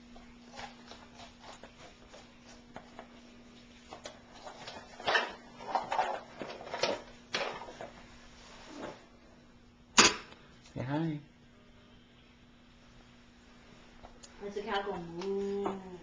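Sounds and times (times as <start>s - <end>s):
steady low hum: 0.0s - 16.0s
objects knocking and clattering: 4.5s - 8.0s.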